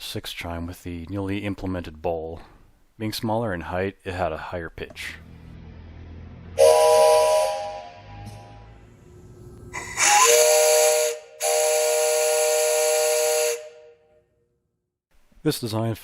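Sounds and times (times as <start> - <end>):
steam whistle chord blasts: 6.5 - 8.8, 9.7 - 14.0.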